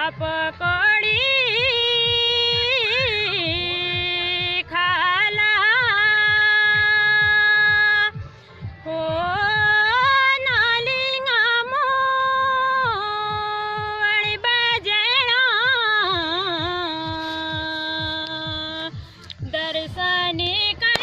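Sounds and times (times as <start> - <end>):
person singing folk melody: 8.7 - 21.0.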